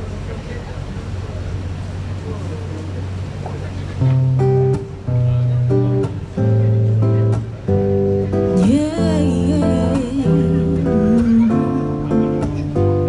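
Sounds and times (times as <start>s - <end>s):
strummed guitar chords: 4.0s - 13.0s
lead melody with vibrato: 8.2s - 13.0s.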